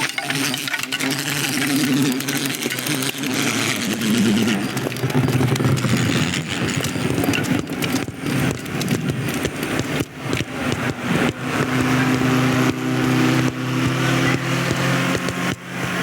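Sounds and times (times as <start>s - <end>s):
small clicks and clatters: 0.0s - 16.0s.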